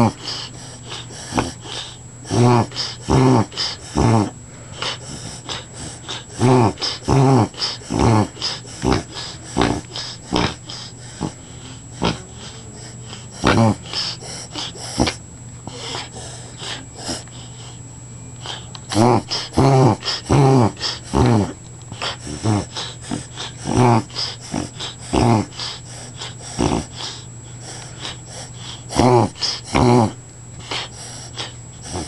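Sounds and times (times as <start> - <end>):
dog reverse sneezing: 0.1 - 17.2.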